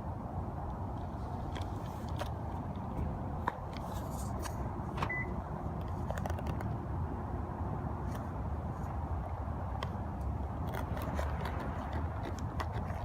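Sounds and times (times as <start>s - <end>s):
low outdoor rumble: 0.0s - 13.0s
faint beep: 5.1s - 5.4s.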